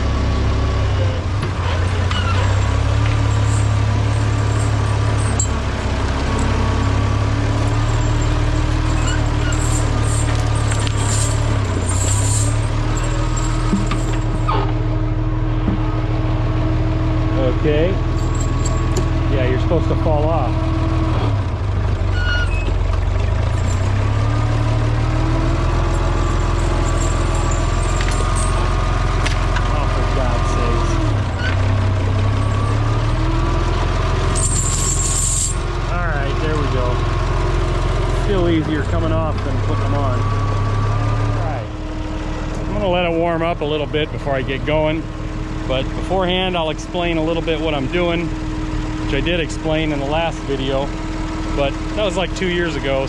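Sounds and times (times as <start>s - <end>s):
tractor engine idling: 0.0s - 53.0s
high-pitched squeak: 22.1s - 22.8s.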